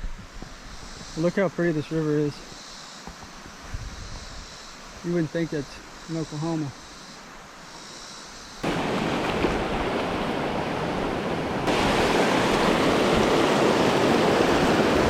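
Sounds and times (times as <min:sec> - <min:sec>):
river water rushing: 0:08.6 - 0:15.0.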